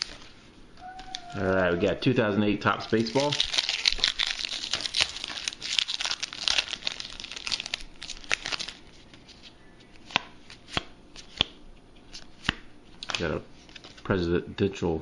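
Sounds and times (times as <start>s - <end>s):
foil wrapper tearing and crumpling: 0.0s - 1.3s, 2.7s - 9.1s.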